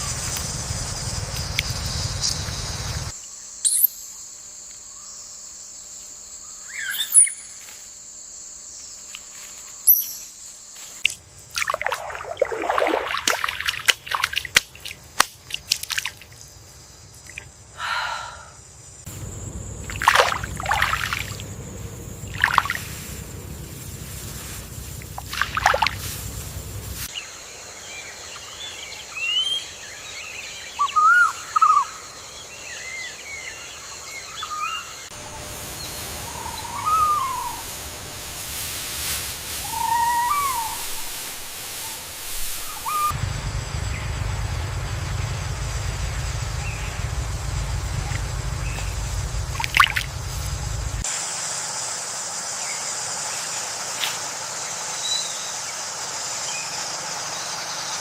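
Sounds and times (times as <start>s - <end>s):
high insect drone: 0.0s - 58.0s
bird chirps: 3.6s - 4.1s, 6.6s - 7.6s, 9.8s - 10.3s, 35.8s - 37.7s, 39.6s - 41.2s, 41.8s - 43.2s
water splashing and sloshing: 11.0s - 16.5s, 19.2s - 27.1s, 47.9s - 51.1s.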